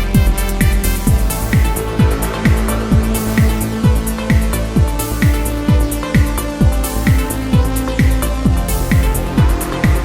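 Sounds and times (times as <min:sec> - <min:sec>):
electronic dance music: 0:00.0 - 0:10.0
hi-hats: 0:00.0 - 0:10.0
kick drum: 0:00.0 - 0:10.0
held synth tone: 0:01.1 - 0:05.5.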